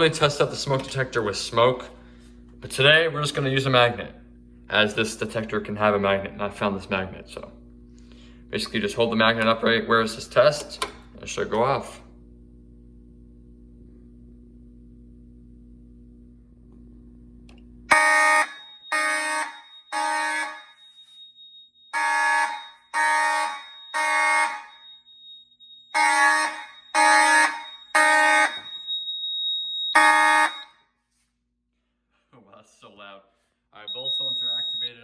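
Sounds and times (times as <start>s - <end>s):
fire alarm horn blasts: 17.9s - 31.0s, 33.8s - 35.0s
steady high-pitched beep: 18.4s - 30.7s, 33.9s - 35.0s.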